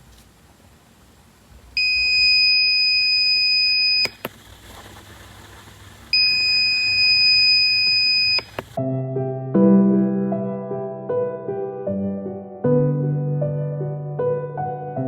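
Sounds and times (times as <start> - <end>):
high-pitched alarm beep: 1.8 - 4.2, 6.2 - 8.5
click: 3.3 - 4.4, 7.8 - 8.8.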